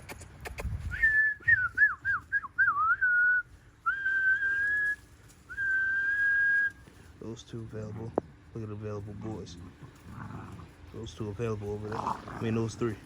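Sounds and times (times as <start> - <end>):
man whistling: 0.8 - 6.8.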